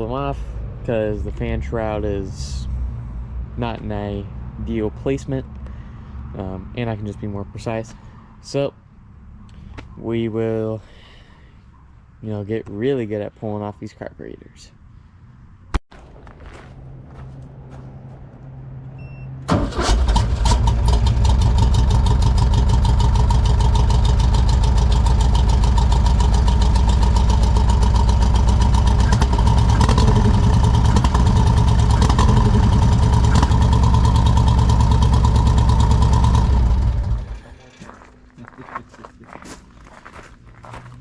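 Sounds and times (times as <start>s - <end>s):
car engine starting and running: 15.9s - 37.7s.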